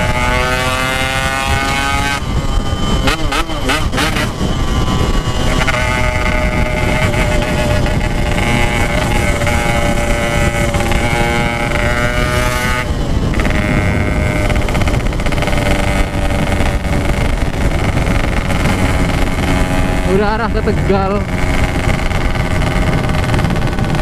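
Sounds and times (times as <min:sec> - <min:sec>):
two-stroke motorcycle at speed: 0:00.0 - 0:24.0
wind rumble on microphone: 0:00.0 - 0:24.0.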